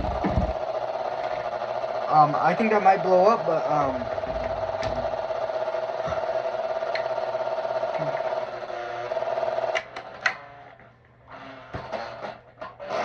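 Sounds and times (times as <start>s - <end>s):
guitar amp buzzing: 0.0s - 1.5s, 3.6s - 7.1s.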